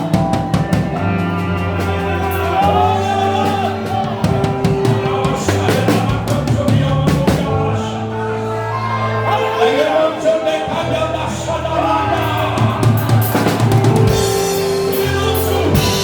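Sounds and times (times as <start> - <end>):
drum kit: 0.0 - 7.8, 12.0 - 16.0
electric bass: 0.0 - 16.0
person singing: 0.0 - 16.0.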